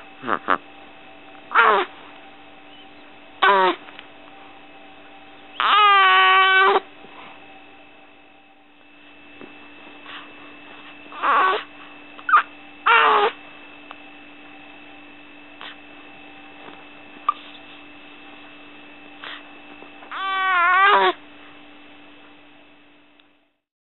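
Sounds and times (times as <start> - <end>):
electrical hum: 0.0 - 23.6
baby squeaky noises: 1.5 - 1.9, 3.4 - 3.8, 5.6 - 6.8, 11.2 - 11.6, 12.3 - 13.4, 20.1 - 21.2.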